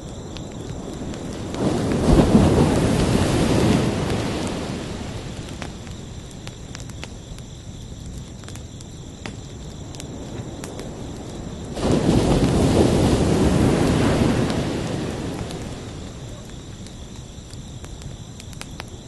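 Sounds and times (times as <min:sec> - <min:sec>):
crickets chirping: 0:00.0 - 0:19.0
ocean wave breaking on shore: 0:11.8 - 0:16.3.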